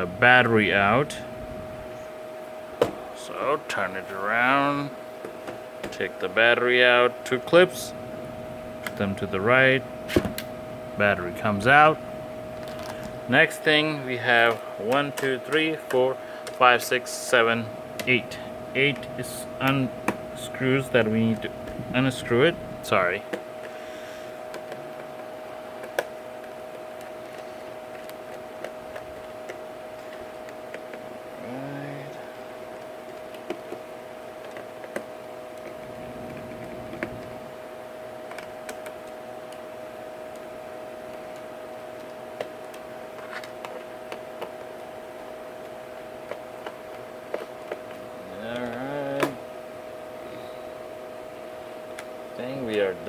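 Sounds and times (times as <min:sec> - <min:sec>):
faint high hum: 0:00.0 - 0:53.0
man's voice murmuring: 0:31.4 - 0:32.3.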